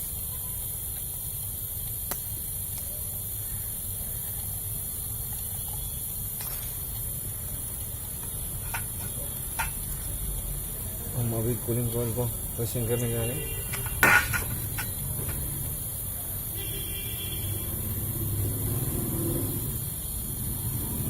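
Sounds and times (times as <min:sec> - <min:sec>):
high hiss: 0:00.0 - 0:21.0.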